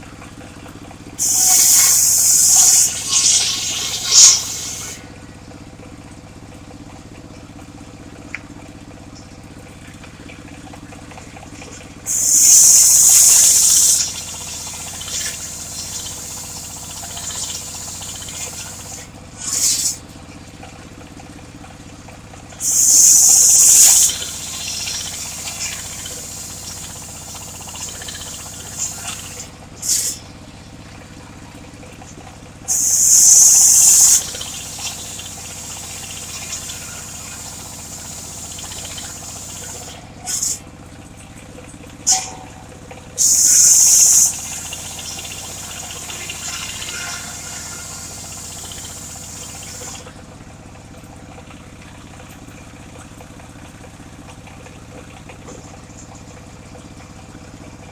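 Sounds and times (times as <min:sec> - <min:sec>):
saw blade cutting wood: 0:01.2 - 0:05.0, 0:12.1 - 0:14.3, 0:18.3 - 0:20.0, 0:28.1 - 0:30.2, 0:39.0 - 0:40.6
circular saw running: 0:01.2 - 0:05.3, 0:12.0 - 0:20.1, 0:22.6 - 0:30.6, 0:32.7 - 0:40.6, 0:43.2 - 0:50.2.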